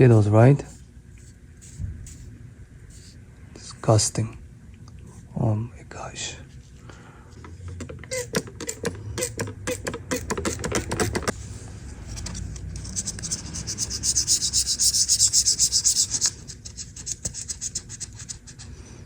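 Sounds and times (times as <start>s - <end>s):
razor blade scraping: 8.1s - 11.3s.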